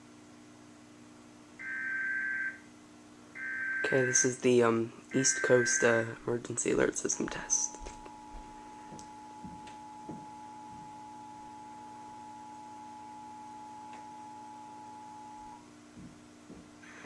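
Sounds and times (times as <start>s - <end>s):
low steady hum: 0.0s - 17.0s
two-tone alert from television: 5.1s - 6.2s.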